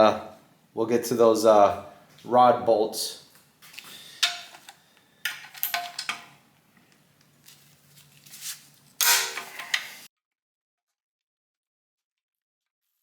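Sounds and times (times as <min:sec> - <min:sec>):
tools and metal parts clinking: 0:04.2 - 0:06.4, 0:09.0 - 0:10.0.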